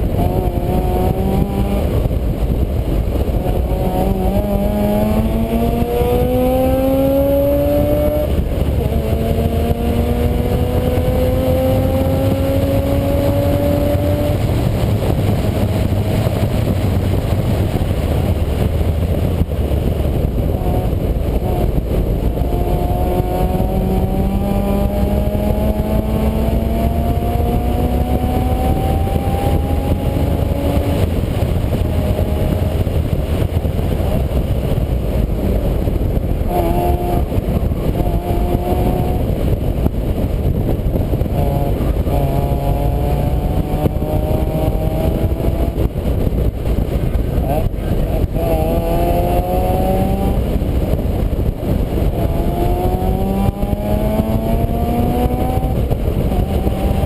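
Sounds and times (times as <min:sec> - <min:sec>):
heavy low rumble: 0:00.0 - 0:57.0
vehicle engine accelerating: 0:00.0 - 0:57.0.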